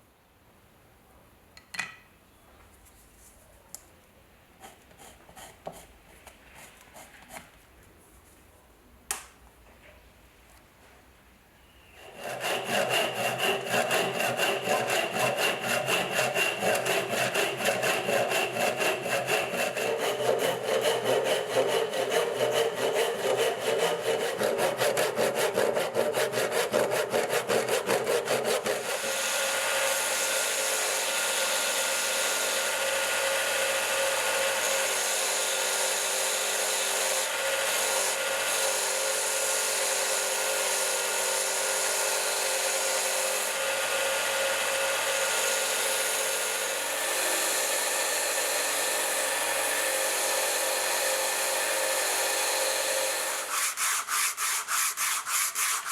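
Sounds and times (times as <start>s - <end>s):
hand saw strokes: 4.6s - 7.5s, 12.0s - 55.9s
small power tool running: 12.0s - 53.6s.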